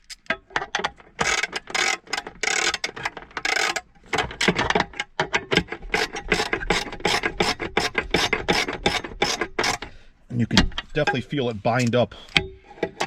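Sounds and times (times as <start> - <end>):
ratchet wrench clicking: 1.2 - 3.8.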